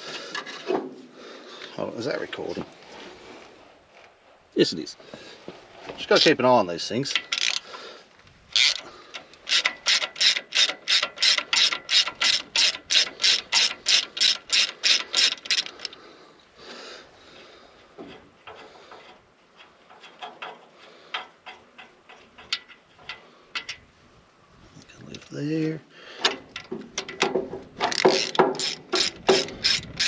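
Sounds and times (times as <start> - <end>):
ratchet spanner clicking: 7.0 - 7.7, 8.5 - 16.0, 26.2 - 30.0.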